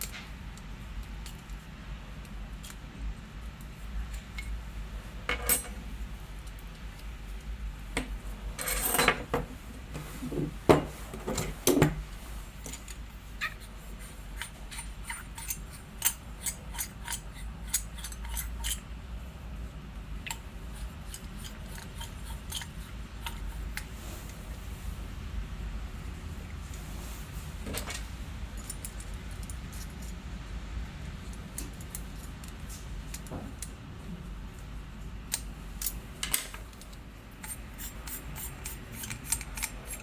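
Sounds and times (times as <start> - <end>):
metal parts scraping: 8.6 - 9.4, 12.6 - 18.8
metal parts clicking: 12.6 - 18.8, 20.3 - 23.9, 35.3 - 40.0.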